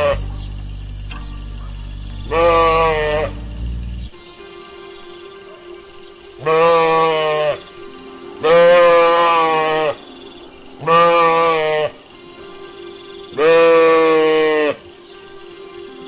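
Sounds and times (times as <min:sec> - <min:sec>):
quiet steady background tone: 0:00.0 - 0:16.0
lamb bleating: 0:02.3 - 0:03.4, 0:06.4 - 0:07.6, 0:08.4 - 0:10.0, 0:10.8 - 0:12.0, 0:13.4 - 0:14.8.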